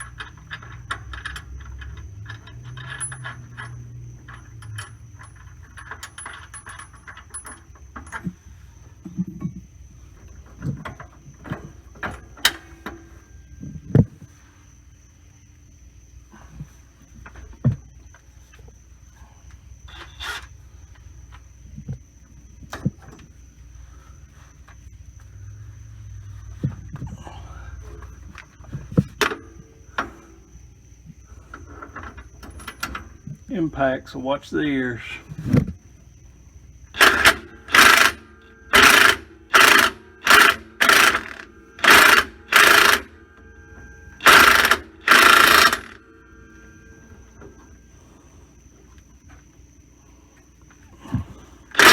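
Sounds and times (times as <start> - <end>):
tools knocking and clunking: 0.0 - 8.4, 9.0 - 14.3, 37.0 - 47.8, 51.1 - 51.9
steady low hum: 0.0 - 51.9
impact wrench hammering: 37.0 - 43.2, 43.8 - 46.1.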